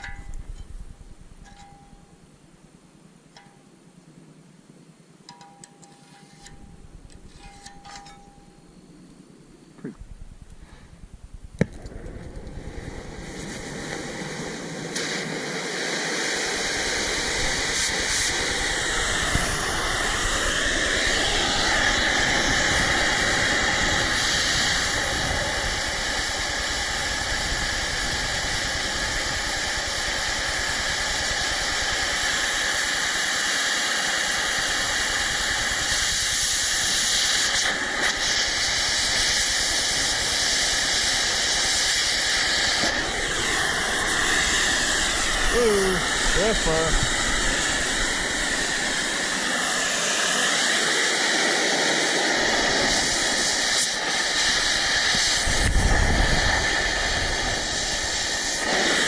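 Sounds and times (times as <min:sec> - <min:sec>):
cutting torch hissing: 0:11.8 - 0:59.0.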